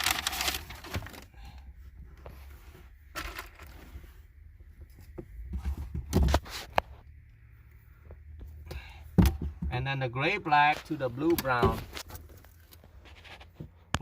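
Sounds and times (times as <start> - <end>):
scraping and rustling: 0.0 - 7.1, 10.7 - 14.0.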